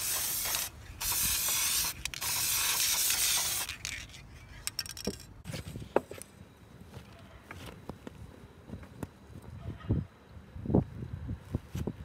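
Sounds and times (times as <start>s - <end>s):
aerosol can spraying hiss: 0.0s - 3.7s.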